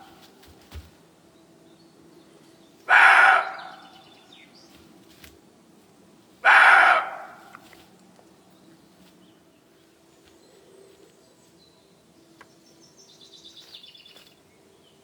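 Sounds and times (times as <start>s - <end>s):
wolf barking call: 2.9s - 4.0s, 6.4s - 7.6s.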